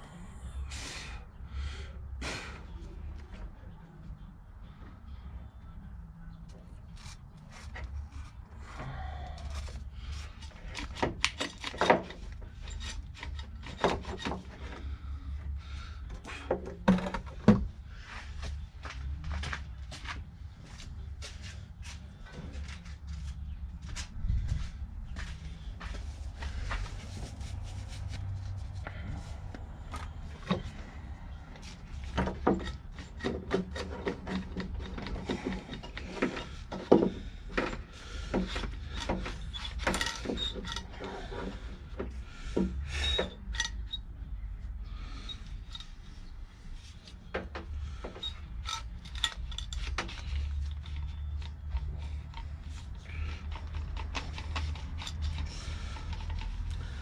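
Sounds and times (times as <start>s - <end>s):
knocks clicks and scraping: 9.4s - 15.0s, 16.0s - 17.8s, 25.8s - 44.3s, 45.1s - 57.0s.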